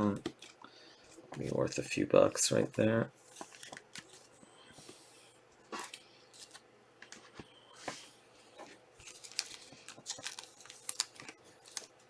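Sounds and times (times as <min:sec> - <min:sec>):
cards flicking and rustling: 0:09.0 - 0:12.0.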